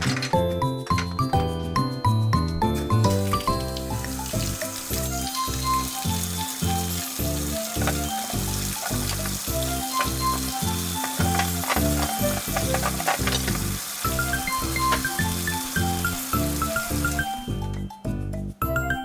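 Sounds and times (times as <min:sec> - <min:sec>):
frying sizzle: 0:02.7 - 0:17.8
background music with a beat: 0:16.8 - 0:19.0.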